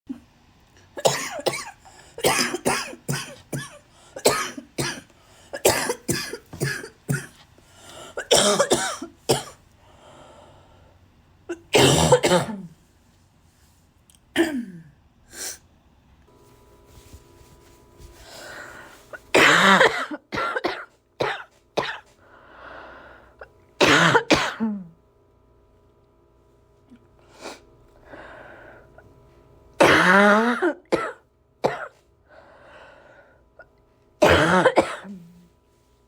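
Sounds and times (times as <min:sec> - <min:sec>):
person coughing: 0:01.0 - 0:07.4, 0:08.1 - 0:09.6, 0:11.5 - 0:12.8, 0:14.4 - 0:15.6, 0:18.5 - 0:22.1, 0:23.8 - 0:25.0, 0:29.8 - 0:32.0, 0:34.2 - 0:35.4.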